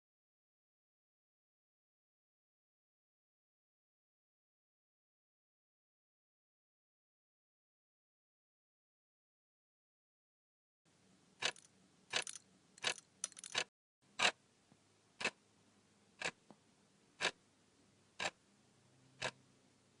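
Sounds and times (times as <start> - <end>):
clock ticking: 19.2 - 19.4.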